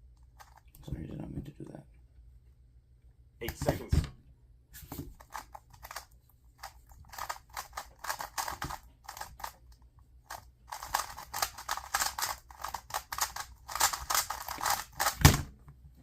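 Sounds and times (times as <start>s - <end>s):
speed cube layers clicking: 5.2s - 9.7s, 10.3s - 15.4s.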